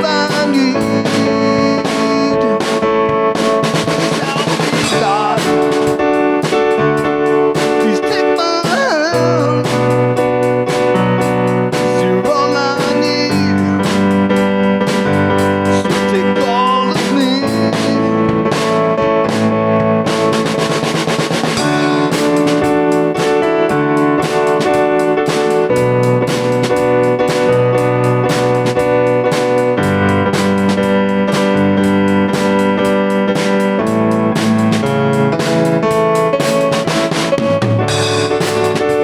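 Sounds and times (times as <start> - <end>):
person singing: 0.0 - 18.8
drum kit beat: 0.0 - 39.0
sustained instruments: 17.9 - 39.0.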